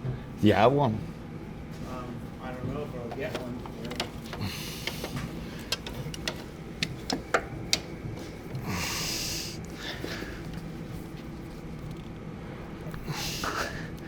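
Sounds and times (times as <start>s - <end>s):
hand tools clicking and knocking: 3.1s - 8.6s
breathy hiss: 8.6s - 10.5s, 13.0s - 14.0s.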